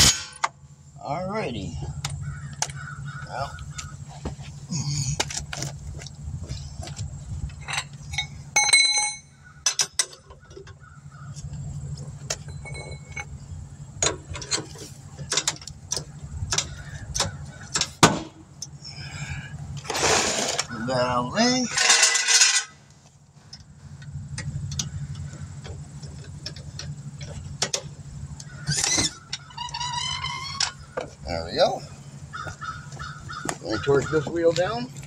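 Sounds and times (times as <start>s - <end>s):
low steady hum: 0.0s - 35.0s
metal tools clinking: 7.5s - 10.8s, 12.1s - 18.0s, 21.4s - 22.8s
ringing metallic clink: 7.7s - 10.0s, 12.5s - 13.3s.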